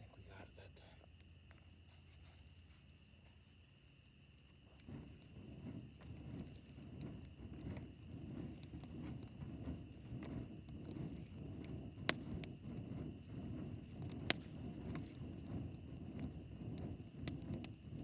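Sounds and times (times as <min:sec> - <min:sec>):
campfire flames rumbling: 0:04.1 - 0:18.0
fire popping: 0:04.6 - 0:18.0.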